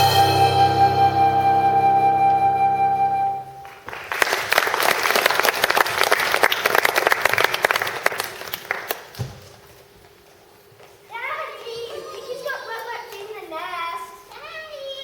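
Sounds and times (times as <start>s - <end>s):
held musical chord: 0.0s - 3.6s
audience applause: 3.6s - 9.2s.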